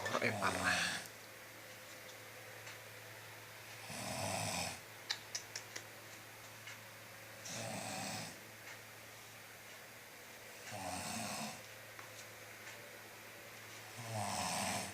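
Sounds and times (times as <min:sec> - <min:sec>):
person snoring: 0:00.2 - 0:01.1, 0:03.8 - 0:04.8, 0:07.5 - 0:08.4, 0:10.7 - 0:11.6, 0:13.9 - 0:14.9.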